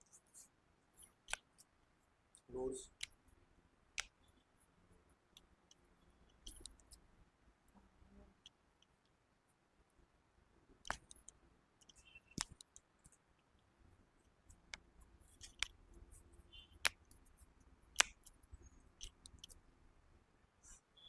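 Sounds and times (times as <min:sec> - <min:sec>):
sharp clicks and taps: 0:01.0 - 0:01.6, 0:06.3 - 0:07.0, 0:10.8 - 0:13.2, 0:14.5 - 0:15.8, 0:16.8 - 0:19.6.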